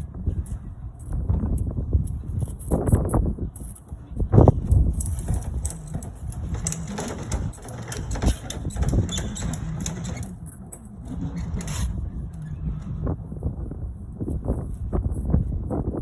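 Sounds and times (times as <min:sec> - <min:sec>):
low rumble: 0:08.1 - 0:16.0.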